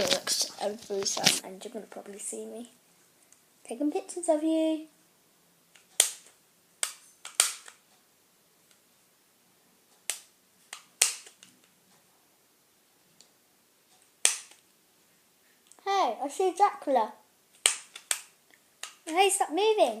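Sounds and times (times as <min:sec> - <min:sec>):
camera shutter clicks: 0:05.9 - 0:07.8.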